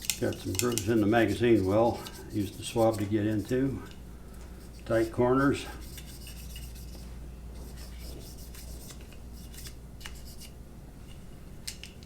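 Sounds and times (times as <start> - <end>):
swab scraping inside metal well: 0.2 - 3.7.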